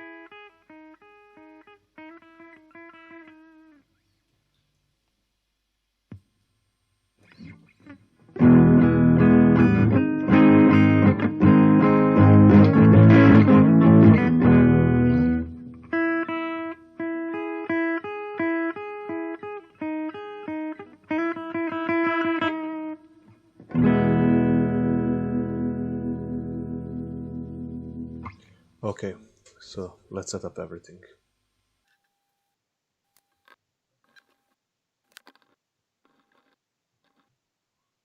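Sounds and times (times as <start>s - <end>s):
electric guitar playing: 0.0s - 3.8s, 7.2s - 28.5s.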